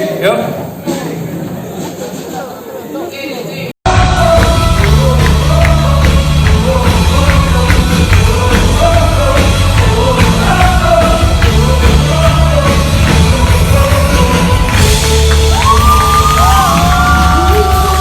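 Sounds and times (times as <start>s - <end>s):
person singing: 3.9s - 18.0s
worship band music: 3.9s - 18.0s.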